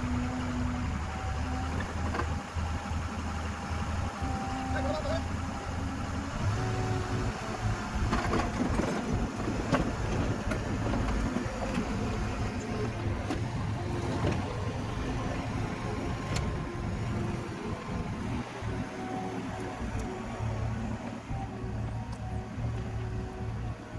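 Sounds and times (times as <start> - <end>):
heavy machine engine running: 0.0 - 23.9.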